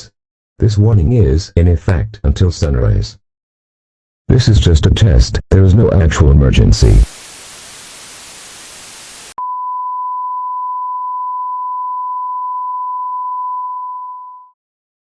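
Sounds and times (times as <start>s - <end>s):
static hiss: 6.8s - 9.4s.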